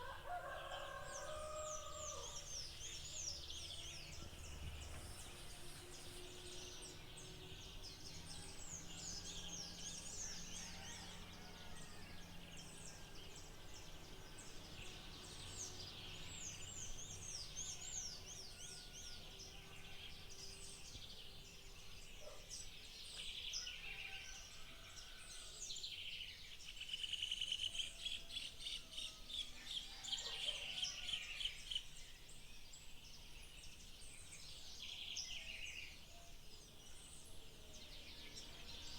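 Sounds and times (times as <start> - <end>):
songbirds chirping: 0.0 - 38.9.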